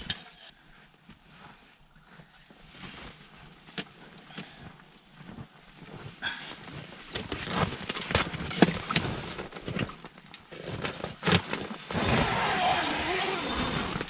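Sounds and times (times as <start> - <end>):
knocks and scraping on ice: 10.7 - 14.0.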